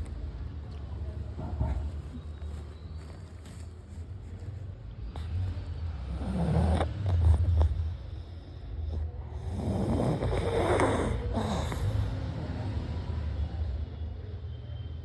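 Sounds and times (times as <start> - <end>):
dog snoring: 5.1 - 14.0.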